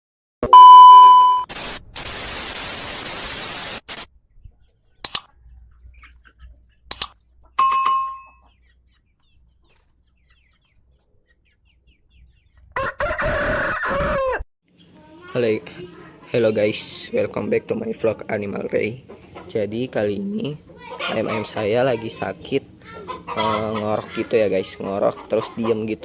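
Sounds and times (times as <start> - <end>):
steady hiss: 1.5 - 4.1
sharp clicks: 5.0 - 5.3, 6.9 - 7.2
bell-like ding: 7.6 - 8.4
chicken call: 12.8 - 14.4.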